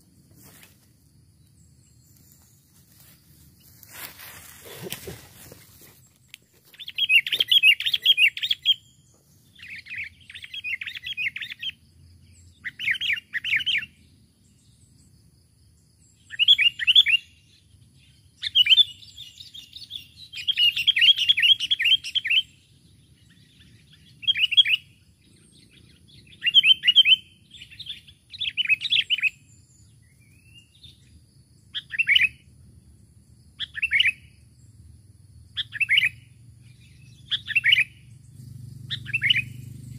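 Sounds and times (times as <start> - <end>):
bird chattering calls: 6.7 - 8.8, 37.1 - 39.9.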